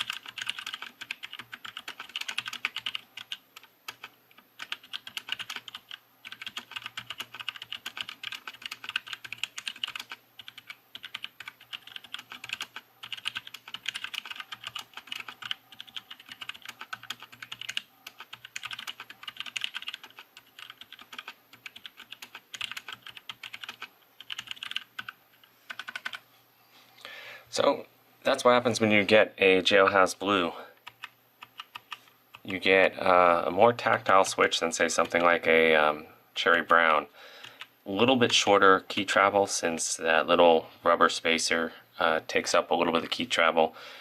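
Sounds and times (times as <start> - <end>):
fast typing on keyboard: 0.0 - 26.2, 30.8 - 32.5, 35.0 - 35.4.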